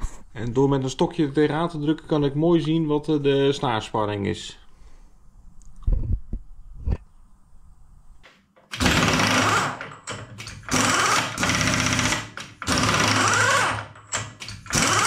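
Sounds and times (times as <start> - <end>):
milling machine running: 10.7 - 13.8, 14.7 - 15.0.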